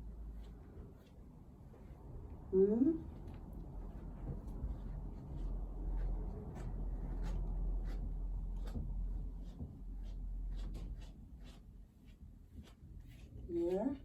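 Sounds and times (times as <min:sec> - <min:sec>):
steady low rumble: 0:00.0 - 0:11.0
brush strokes through cat fur: 0:00.0 - 0:14.0.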